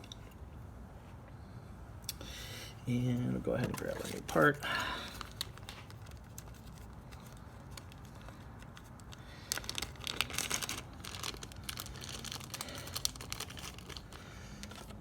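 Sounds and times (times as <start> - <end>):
plastic packaging crinkling: 3.5 - 15.0.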